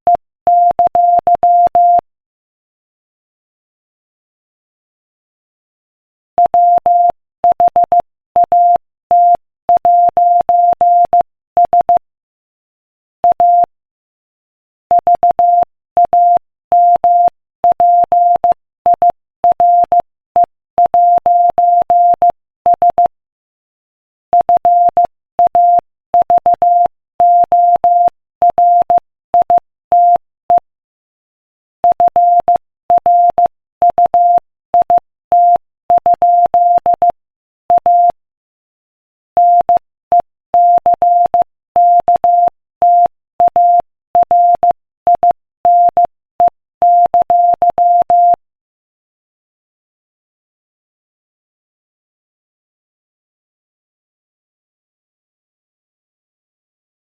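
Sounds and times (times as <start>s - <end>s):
morse code beeps: 0.1s - 2.0s, 6.4s - 12.0s, 13.3s - 13.7s, 14.9s - 20.0s, 20.8s - 23.1s, 24.4s - 30.6s, 31.8s - 38.2s, 39.4s - 48.4s.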